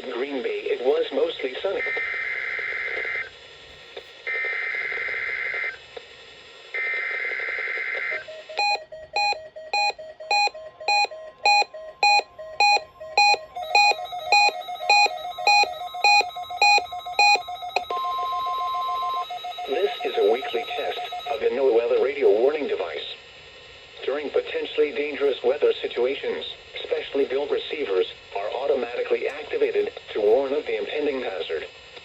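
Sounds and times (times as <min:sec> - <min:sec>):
electronic beeping alarm: 0:08.3 - 0:21.4
second beep pattern: 0:08.6 - 0:21.4.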